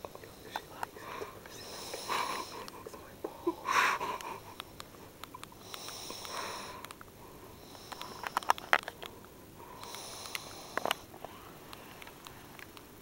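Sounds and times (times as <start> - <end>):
sharp clicks: 4.1 - 9.2, 9.8 - 11.1, 11.7 - 13.0
woman snoring: 5.6 - 6.8.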